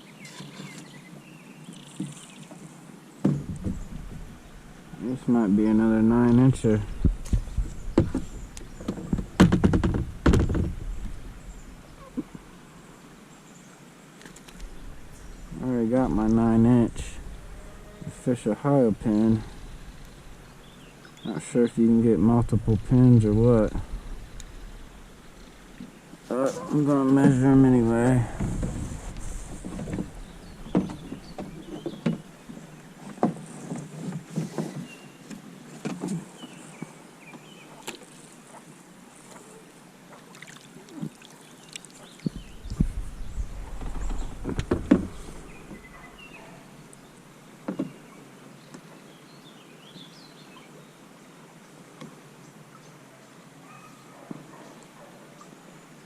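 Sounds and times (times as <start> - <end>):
knocks against a kayak: 3.2 - 4.3, 6.9 - 11.2, 28.3 - 32.3, 42.3 - 45.9, 47.6 - 48.0
faint bird chirps: 41.4 - 47.2.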